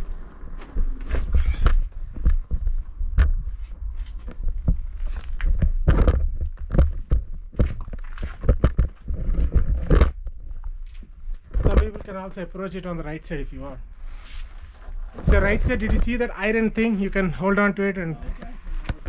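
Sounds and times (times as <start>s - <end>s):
footsteps on rock and grit: 0.0s - 12.2s
low constant rumble: 0.0s - 19.0s.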